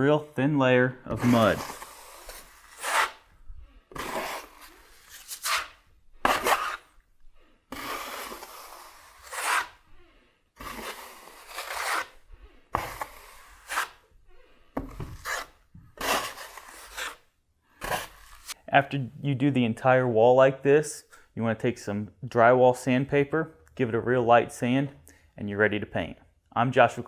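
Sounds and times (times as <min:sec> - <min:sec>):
trowel scraping wet compound: 0:01.1 - 0:03.3, 0:03.9 - 0:07.0, 0:07.7 - 0:09.8, 0:10.6 - 0:14.0, 0:14.9 - 0:18.6.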